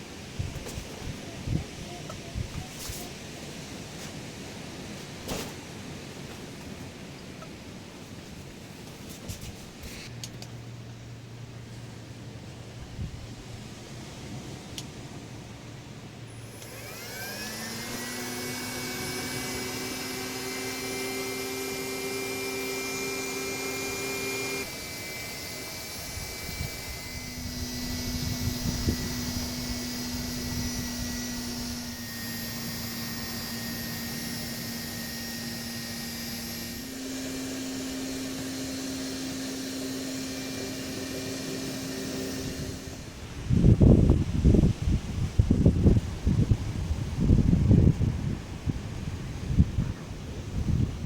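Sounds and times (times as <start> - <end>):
small motor whining and humming: 16.2 - 43.8.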